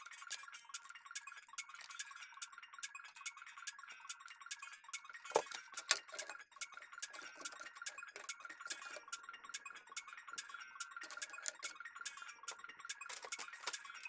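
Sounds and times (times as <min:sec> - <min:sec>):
computer parts clicking: 0:05.2 - 0:06.4, 0:07.0 - 0:09.6, 0:10.8 - 0:14.0.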